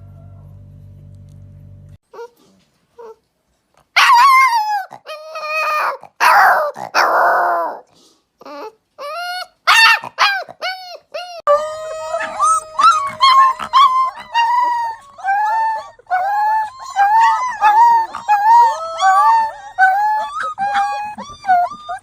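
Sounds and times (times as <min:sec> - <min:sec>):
puppies howling: 0:09.0 - 0:22.0.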